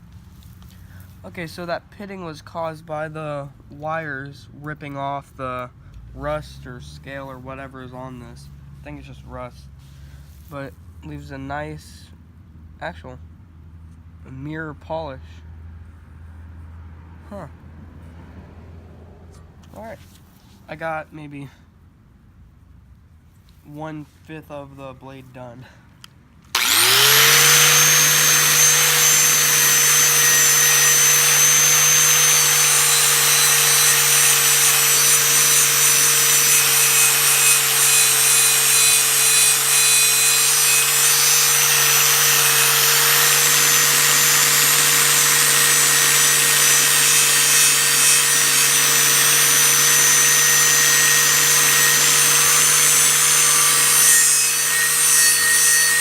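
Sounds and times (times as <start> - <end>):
angle grinder motor whine: 26.5 - 56.0.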